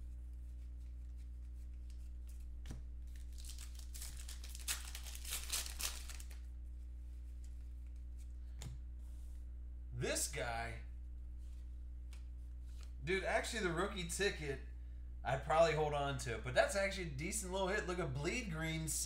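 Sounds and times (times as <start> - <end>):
low electrical hum: 0.0 - 19.0
foil wrappers tearing and crinkling: 3.1 - 6.4.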